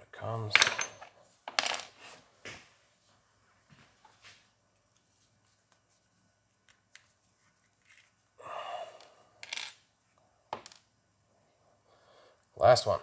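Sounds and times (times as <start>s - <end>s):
breathy noise: 8.4s - 9.4s.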